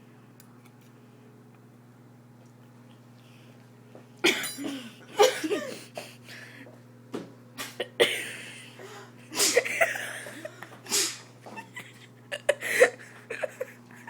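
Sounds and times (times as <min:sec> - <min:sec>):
man coughing and sneezing: 0:04.2 - 0:06.0, 0:07.8 - 0:08.5, 0:09.3 - 0:11.3.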